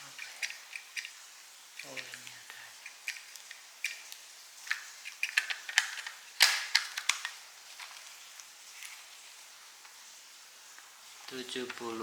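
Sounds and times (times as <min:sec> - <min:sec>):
sharp plastic snap: 0:02.9 - 0:07.3.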